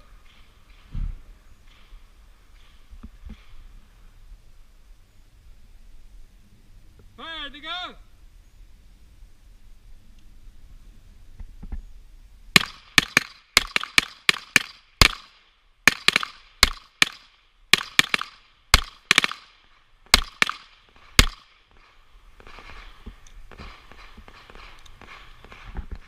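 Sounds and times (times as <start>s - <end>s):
pistol shots: 12.6s - 25.7s.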